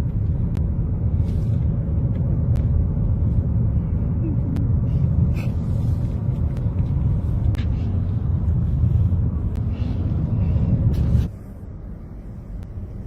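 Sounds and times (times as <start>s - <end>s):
car driving rumble: 0.0s - 13.0s.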